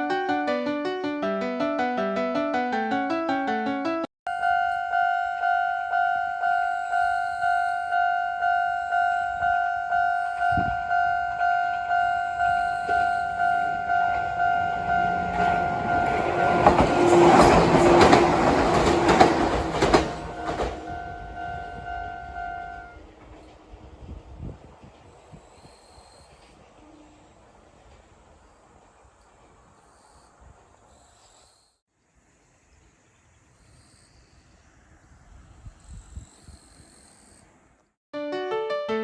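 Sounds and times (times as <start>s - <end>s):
level crossing alarm ringing: 4.3s - 23.0s
train passing with wheel clatter: 4.4s - 25.4s.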